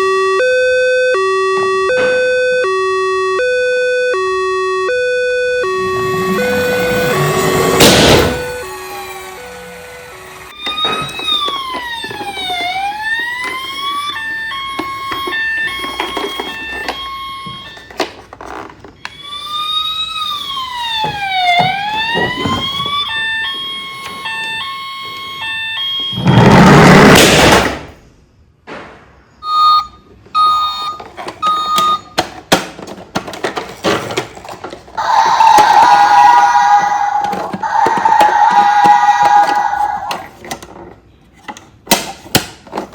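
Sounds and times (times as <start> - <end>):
toy electronic sirens: 0.0 - 27.2, 29.4 - 32.3, 34.4 - 40.6
loud burst of noise: 5.7 - 10.5, 35.0 - 40.2
short beeps and clicks: 29.4 - 32.1.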